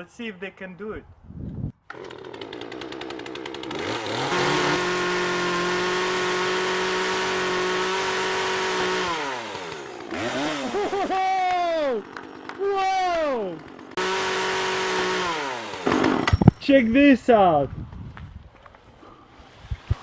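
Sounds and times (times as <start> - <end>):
chainsaw engine revving: 1.9 - 16.4.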